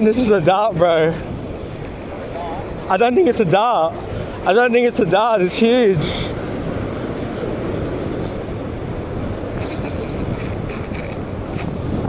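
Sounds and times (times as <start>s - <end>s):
surf: 0.0s - 12.0s
wind rumbling on microphone: 0.0s - 12.0s
fishing reel clicking: 1.1s - 2.4s, 4.9s - 6.1s, 7.6s - 8.8s, 9.5s - 11.8s.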